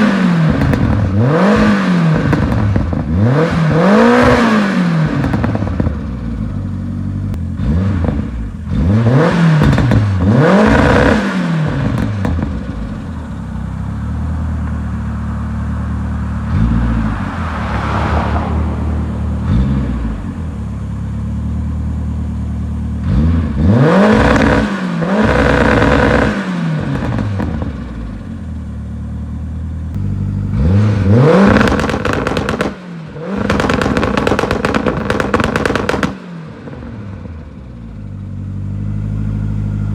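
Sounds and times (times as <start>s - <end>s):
car engine revving and idling: 0.0s - 39.9s
exhaust crackles and pops: 0.5s - 1.3s, 2.2s - 3.2s, 5.1s - 6.2s, 9.6s - 13.3s, 24.1s - 28.2s, 31.2s - 36.3s.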